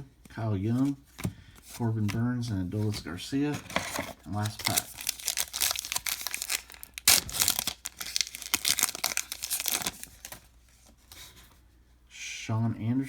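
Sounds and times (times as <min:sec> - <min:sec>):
wrapper tearing and crinkling: 0:04.4 - 0:10.5.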